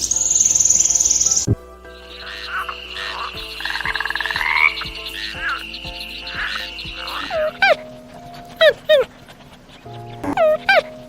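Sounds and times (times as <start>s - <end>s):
frog pulsed trill: 0.0s - 7.8s
high-pitched frog chorus: 0.0s - 11.0s
soft repeated frog calls: 0.0s - 11.0s.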